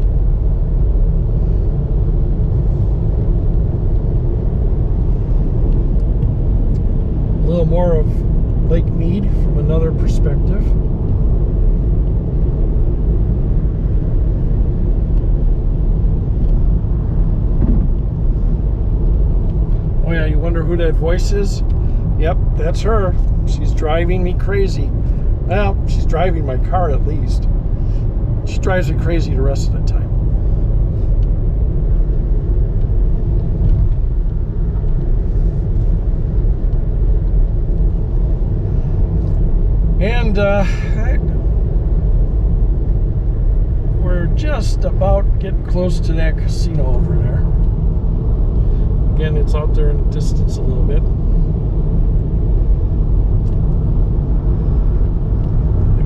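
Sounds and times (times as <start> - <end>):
moving car rumble: 0.0 - 56.0.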